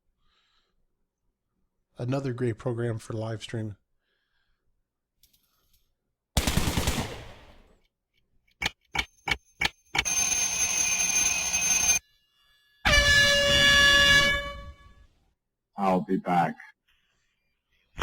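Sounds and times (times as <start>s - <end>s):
ringing alarm-like tones: 9.9s - 15.0s.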